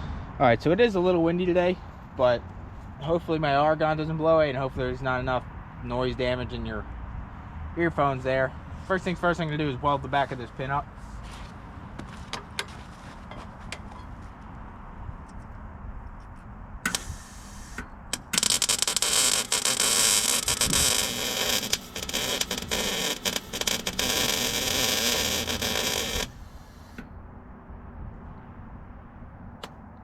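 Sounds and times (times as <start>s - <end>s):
welding arc crackling: 16.9s - 27.0s
wind rumble on microphone: 20.5s - 21.1s, 27.2s - 29.6s.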